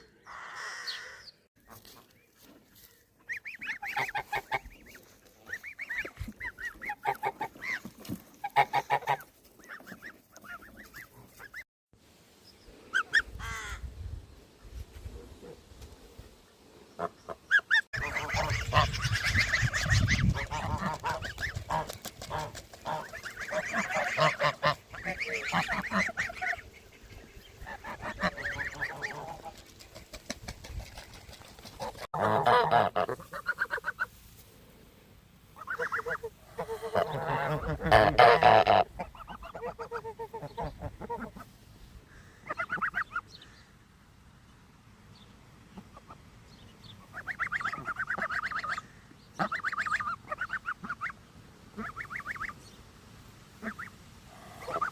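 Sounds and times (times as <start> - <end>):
geese honking: 3.3 - 11.6, 17.0 - 29.6, 31.8 - 34.2, 35.6 - 41.5, 42.4 - 43.2, 47.0 - 52.6, 53.6 - 54.9.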